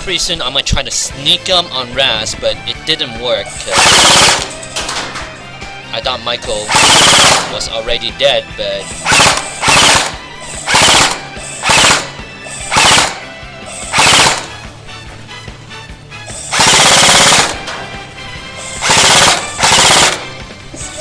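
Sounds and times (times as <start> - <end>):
airsoft guns firing bursts: 3.7 - 4.6, 6.7 - 7.6, 9.0 - 13.3, 13.9 - 14.6, 16.5 - 17.6, 18.8 - 20.3.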